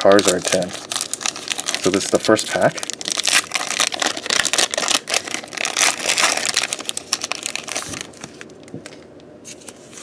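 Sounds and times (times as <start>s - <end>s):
foil wrapper crinkling: 0.0s - 9.0s.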